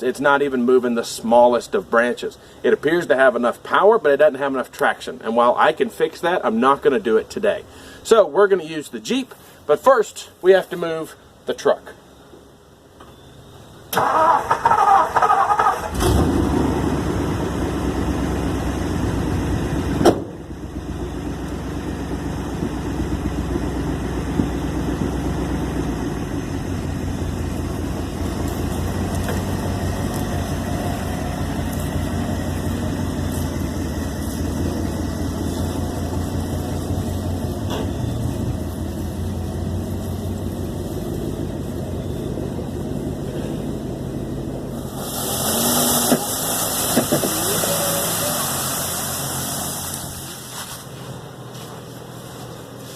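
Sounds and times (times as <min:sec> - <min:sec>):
truck engine starting and running: 0:11.2 - 0:52.9
sharp thump: 0:20.0 - 0:20.4.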